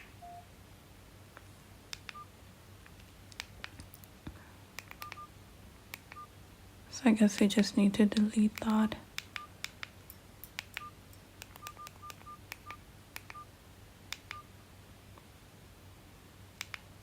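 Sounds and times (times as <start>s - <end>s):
phone key beeps: 0.2s - 0.4s, 5.0s - 5.3s, 10.8s - 11.0s, 11.6s - 13.5s.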